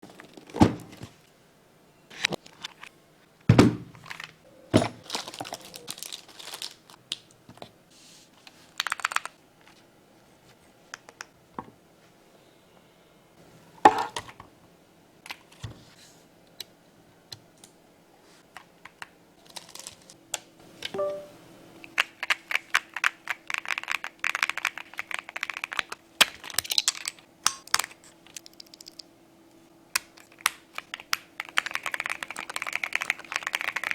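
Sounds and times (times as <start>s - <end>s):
packaging crinkling and cracking: 5.0s - 7.4s, 22.2s - 29.0s
brief tone: 21.0s - 21.4s
mechanical keyboard typing: 22.0s - 25.9s, 28.3s - 29.0s, 30.4s - 33.9s.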